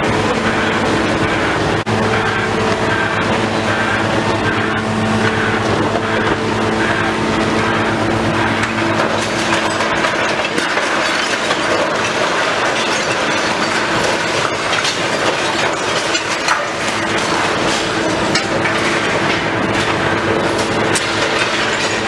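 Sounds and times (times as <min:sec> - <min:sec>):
diesel engine running: 0:00.0 - 0:22.0
debris breaking and falling: 0:04.4 - 0:22.0.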